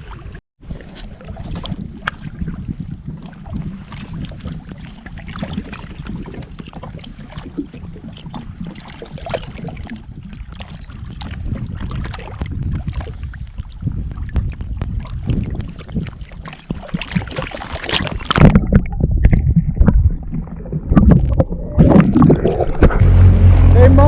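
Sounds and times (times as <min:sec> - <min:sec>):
water rushing under hull: 0:00.0 - 0:24.0
wind buffeting microphone: 0:00.8 - 0:24.0
jet ski engine: 0:23.0 - 0:24.0.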